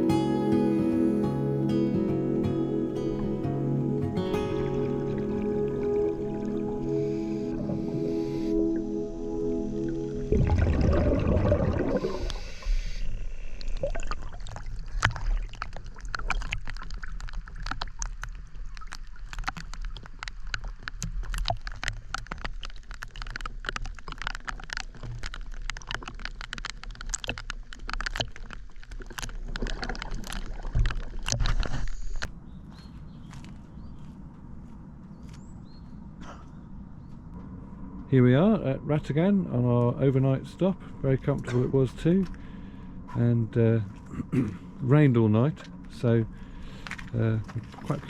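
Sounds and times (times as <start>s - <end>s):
underwater bubbling and gurgling: 2.2s - 32.3s, 39.2s - 48.0s
dense crackle of clicks: 13.1s - 32.3s, 45.4s - 48.0s.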